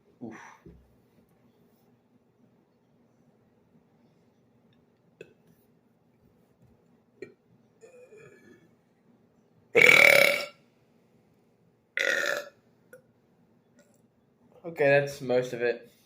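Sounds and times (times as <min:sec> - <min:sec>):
man burping loudly: 0:09.8 - 0:10.6, 0:12.0 - 0:12.6.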